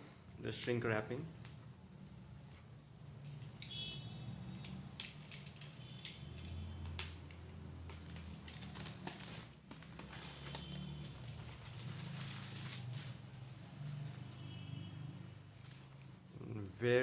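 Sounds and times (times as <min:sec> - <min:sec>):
plastic wrap crinkling: 0:07.9 - 0:13.3.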